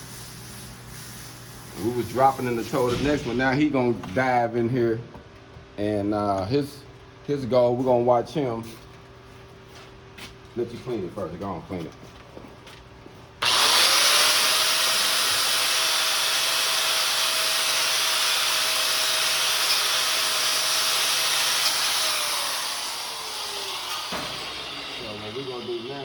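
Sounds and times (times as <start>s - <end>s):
electric angle grinder: 13.4s - 26.0s.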